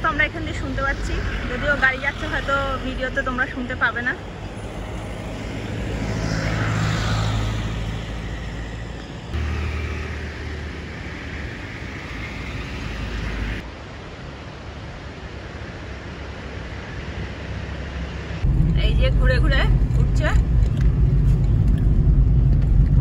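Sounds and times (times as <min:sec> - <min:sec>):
vehicle passing: 0:00.0 - 0:13.6
engine hum with tyre noise: 0:00.0 - 0:23.0.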